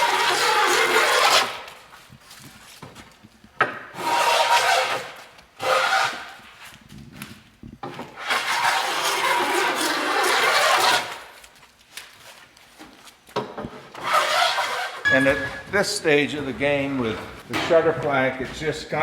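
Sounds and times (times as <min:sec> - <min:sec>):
hand tool rasping wood: 0:00.0 - 0:01.6, 0:04.0 - 0:06.4, 0:08.2 - 0:11.2, 0:14.0 - 0:15.0.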